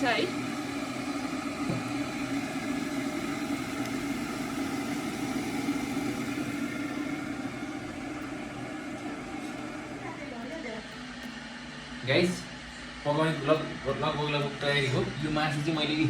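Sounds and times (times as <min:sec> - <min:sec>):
onions sizzling in oil: 0:00.0 - 0:12.4
constant low hum: 0:00.0 - 0:16.0.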